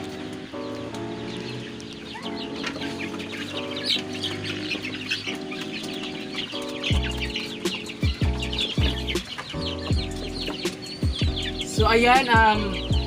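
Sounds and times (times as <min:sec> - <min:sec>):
background music with held chords: 0:00.0 - 0:13.0
chicks peeping: 0:00.0 - 0:13.0
hens clucking: 0:00.0 - 0:13.0
electronic kick drum: 0:08.0 - 0:09.2, 0:11.0 - 0:12.0.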